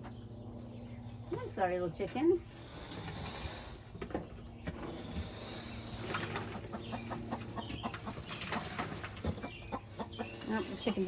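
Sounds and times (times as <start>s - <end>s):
hen clucking: 4.7s - 11.0s.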